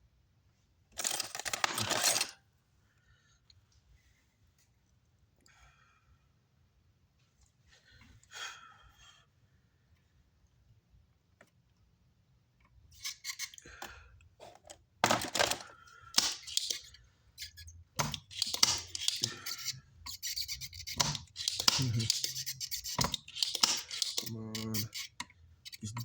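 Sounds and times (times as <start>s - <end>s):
tools scraping circuit board: 1.0s - 2.4s, 12.9s - 13.6s, 16.2s - 26.0s.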